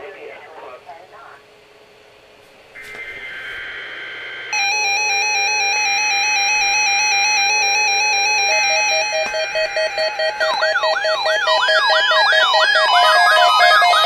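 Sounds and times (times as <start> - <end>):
warbling alarm tone: 2.8 - 14.0
electronic data tones: 4.5 - 14.0.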